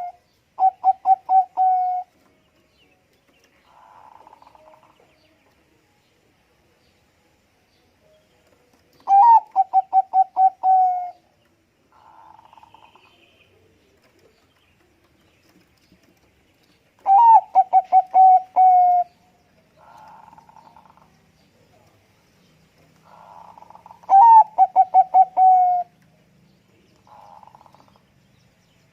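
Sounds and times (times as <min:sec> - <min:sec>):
dove cooing: 0:00.0 - 0:02.2, 0:09.0 - 0:11.3, 0:17.0 - 0:19.2, 0:23.0 - 0:26.0.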